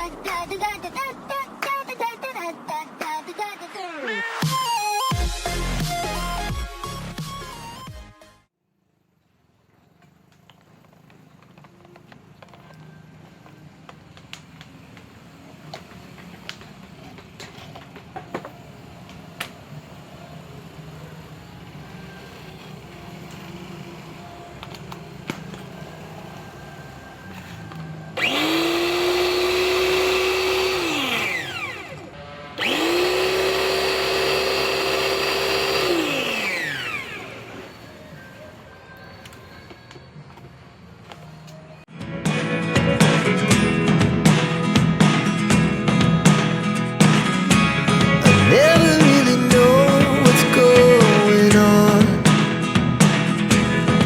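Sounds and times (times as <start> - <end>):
pressure washer motor whirring: 19.8 - 38.7.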